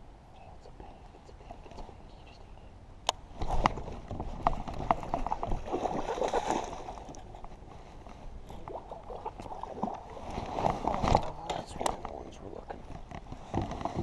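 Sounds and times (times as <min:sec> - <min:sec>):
water splashing and sloshing: 0:03.3 - 0:14.0.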